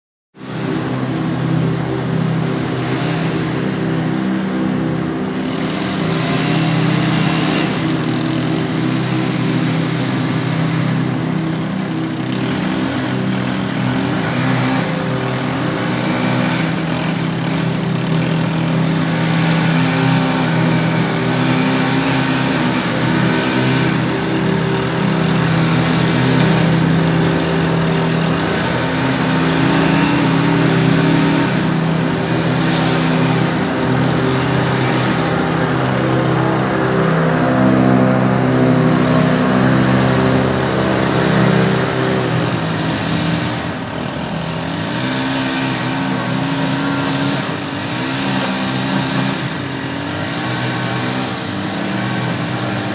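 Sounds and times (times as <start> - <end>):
lawn mower engines running: 0.3 - 52.9.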